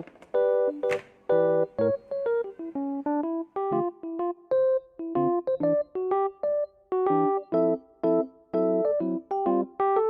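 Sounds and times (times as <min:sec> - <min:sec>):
bright electric piano notes: 0:00.0 - 0:10.0.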